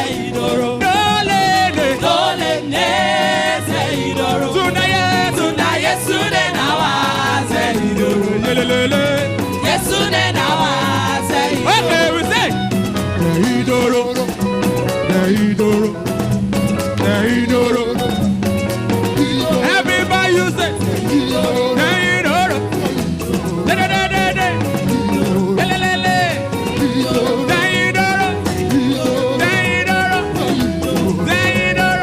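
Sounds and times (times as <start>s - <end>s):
people singing: 0.0s - 12.6s, 13.2s - 14.4s, 17.0s - 18.2s, 19.0s - 32.0s
band playing upbeat song: 0.0s - 32.0s.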